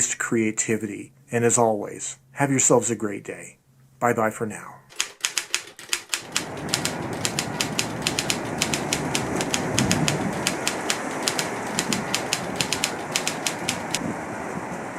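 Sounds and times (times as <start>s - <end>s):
typewriter keys striking: 4.9s - 14.0s
steady rumbling noise: 5.3s - 14.8s.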